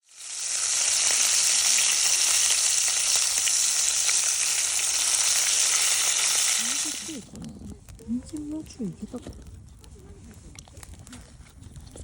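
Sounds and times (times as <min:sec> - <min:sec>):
food sizzling in a pot: 0:00.0 - 0:07.2.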